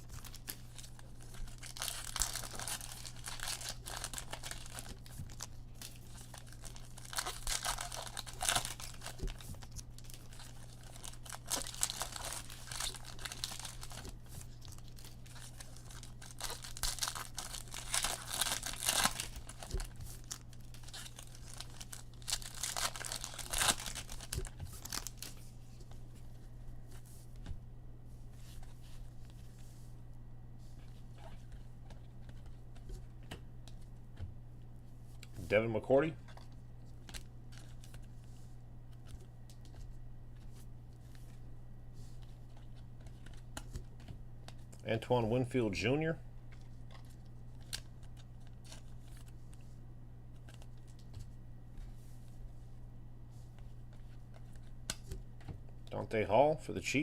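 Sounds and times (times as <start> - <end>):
foil wrappers tearing and crinkling: 0.0 - 25.4
steady low hum: 0.0 - 57.0.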